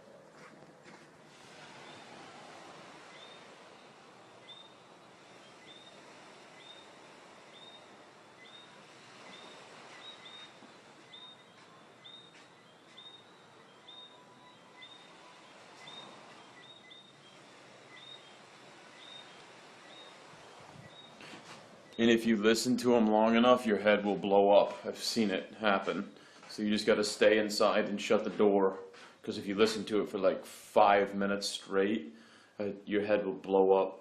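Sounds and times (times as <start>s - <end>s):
faint steady hiss: 0.0s - 34.0s
insects chirping: 1.7s - 22.1s.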